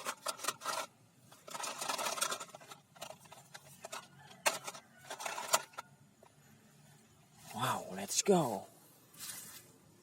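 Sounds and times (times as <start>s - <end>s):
plastic toy guns rustling: 0.0s - 5.9s.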